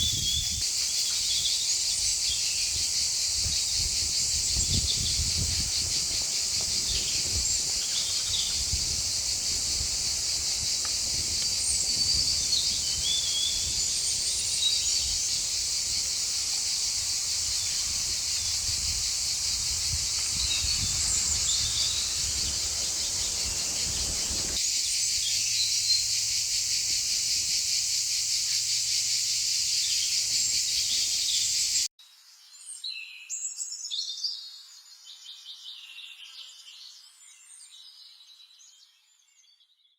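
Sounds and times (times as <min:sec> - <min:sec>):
birds chirping: 0:00.0 - 0:24.6
insects chorus: 0:00.0 - 0:31.9.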